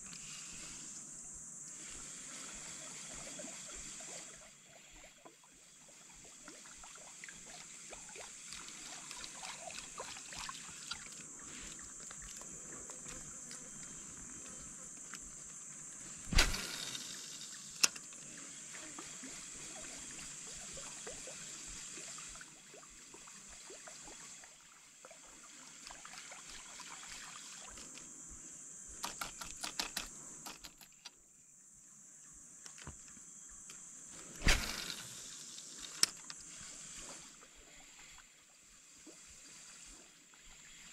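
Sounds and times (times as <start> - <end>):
swamp ambience: 0.0 - 31.1, 31.8 - 40.9
insects buzzing: 0.0 - 40.9
loud thump: 16.3 - 16.7.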